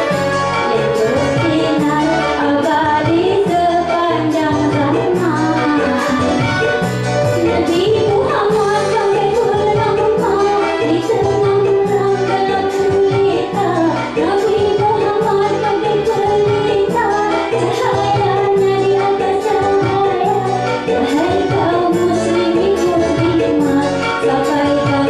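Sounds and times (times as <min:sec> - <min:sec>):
instrumental music with steady beat: 0:00.0 - 0:25.0.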